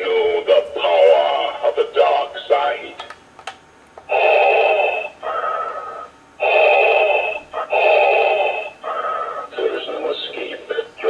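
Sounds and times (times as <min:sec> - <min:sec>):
electronic hissing breathing: 0:04.1 - 0:11.0.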